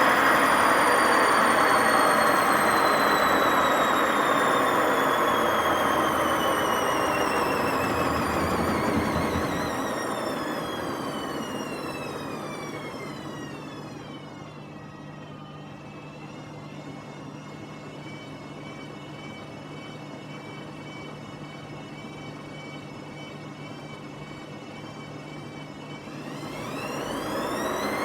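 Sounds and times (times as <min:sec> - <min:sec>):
washing machine spin winding down: 0:00.0 - 0:20.9, 0:21.9 - 0:28.0.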